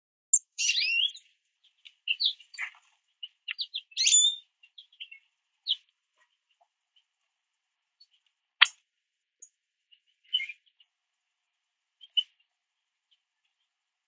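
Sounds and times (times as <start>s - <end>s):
songbirds chirping: 0.3s - 14.0s
loud sweeping bird call: 0.6s - 1.2s.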